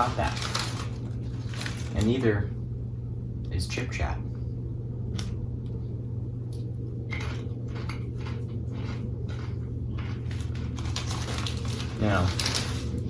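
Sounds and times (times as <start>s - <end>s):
low hum: 0.0s - 13.0s
chips crunching when chewed: 7.1s - 13.0s.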